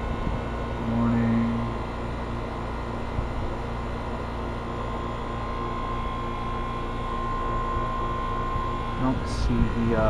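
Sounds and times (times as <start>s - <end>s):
air conditioner humming: 0.0s - 10.0s
high steady tone: 0.8s - 2.0s.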